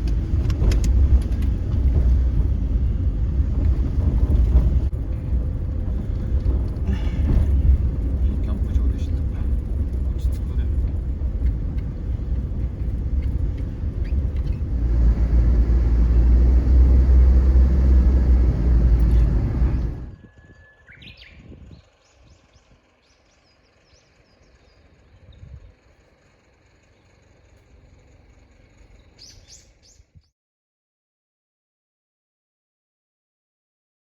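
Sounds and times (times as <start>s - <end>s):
low rumbling noise: 0.0s - 30.0s
faint bird chirps: 20.1s - 25.9s, 28.9s - 30.3s.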